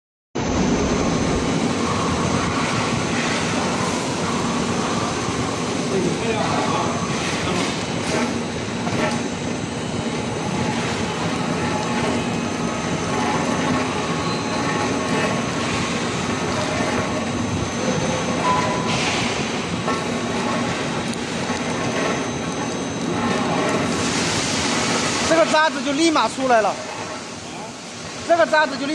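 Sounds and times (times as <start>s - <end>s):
furnace rumble and clatter: 0.4s - 28.9s
faint high whine: 8.6s - 19.7s.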